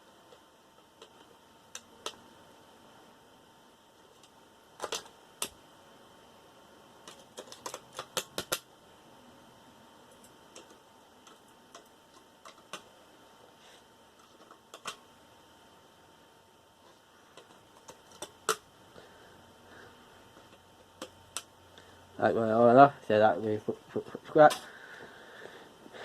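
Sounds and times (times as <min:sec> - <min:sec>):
small parts and tools clicking: 0:07.0 - 0:08.7, 0:10.1 - 0:12.9, 0:14.2 - 0:15.0, 0:17.3 - 0:18.7.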